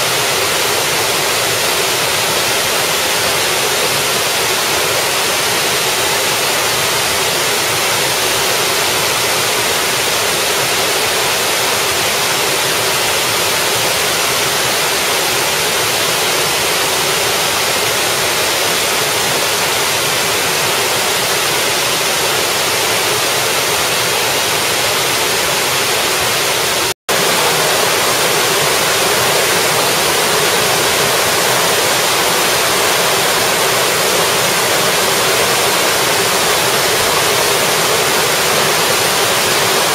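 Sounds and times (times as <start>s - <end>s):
waterfall rushing over rocks: 0.0s - 39.9s.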